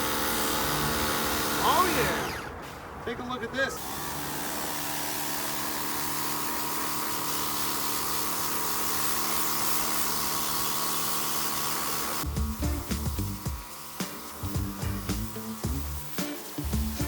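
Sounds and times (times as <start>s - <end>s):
pressure washer motor hum: 0.0s - 2.7s, 3.8s - 17.0s
water jet hissing: 6.5s - 17.0s.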